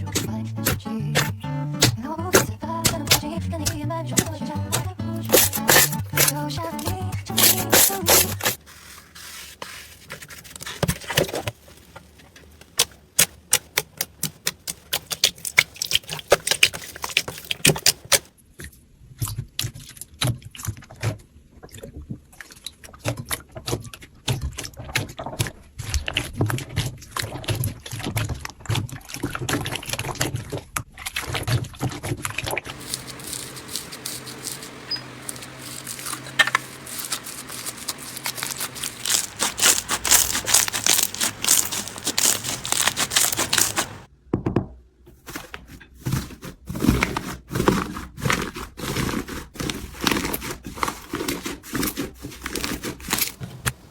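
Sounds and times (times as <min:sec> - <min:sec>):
soft slime crackle: 0:32.7 - 0:44.1.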